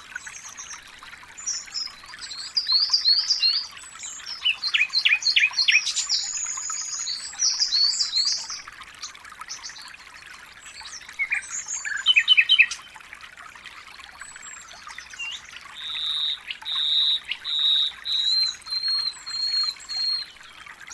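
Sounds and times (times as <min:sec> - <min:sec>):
trickle of running water: 0:00.0 - 0:20.9
songbirds chirping and trilling: 0:00.1 - 0:08.7, 0:14.2 - 0:20.9.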